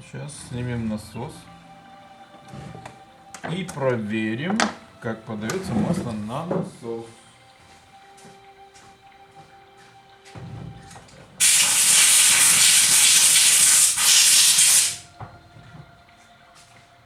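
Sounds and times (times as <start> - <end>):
pressurized air jet hissing: 11.4 - 15.1.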